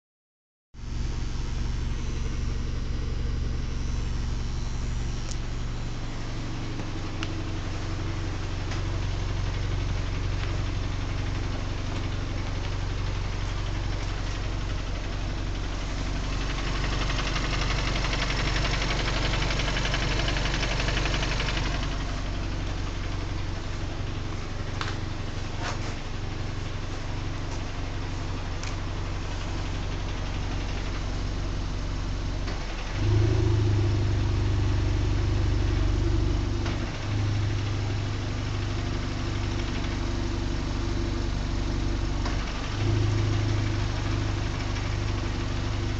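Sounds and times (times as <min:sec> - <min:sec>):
car engine idling: 0:00.8 - 0:45.9.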